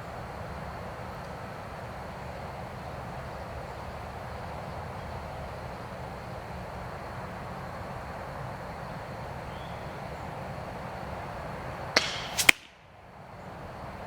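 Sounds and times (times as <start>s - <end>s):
steady outdoor hiss: 0.0s - 14.0s
quick sharp knocks: 12.0s - 12.7s
crossbow firing crack: 12.0s - 12.8s.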